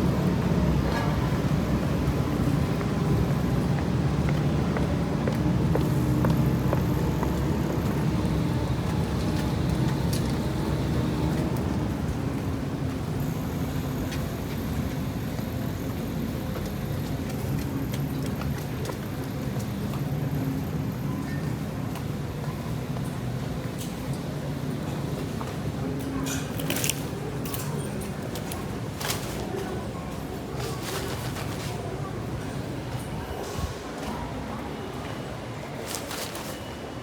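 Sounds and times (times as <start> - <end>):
road traffic hum: 0.0 - 18.8.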